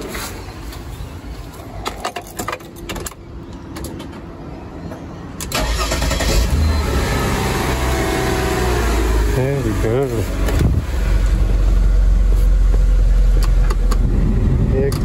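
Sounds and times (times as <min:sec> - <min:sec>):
car engine starting and running: 0:05.4 - 0:15.0.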